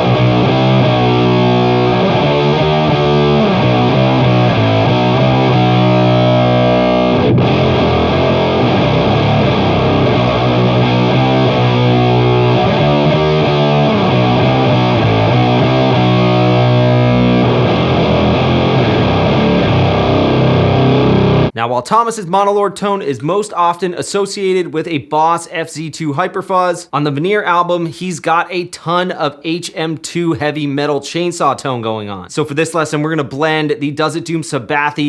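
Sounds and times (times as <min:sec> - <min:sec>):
distorted electric guitar riff: 0:00.0 - 0:21.6.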